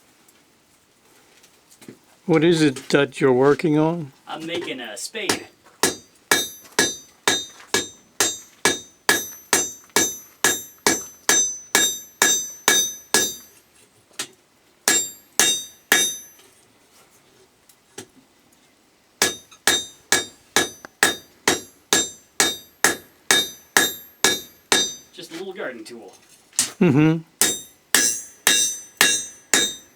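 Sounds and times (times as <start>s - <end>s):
hammer striking steel on anvil: 5.3s - 13.6s, 14.9s - 16.5s, 19.2s - 25.2s, 27.4s - 29.9s.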